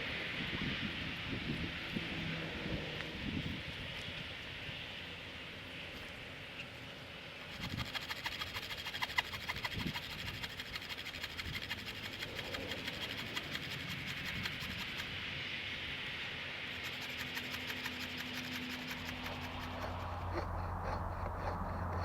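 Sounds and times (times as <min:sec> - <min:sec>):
handsaw cutting branch: 0:07.4 - 0:15.3, 0:16.6 - 0:22.0.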